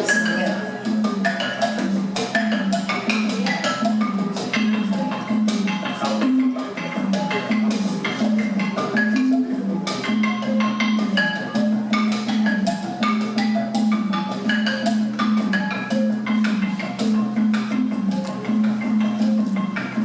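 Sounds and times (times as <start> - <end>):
mallet percussion notes: 0.0 - 20.0.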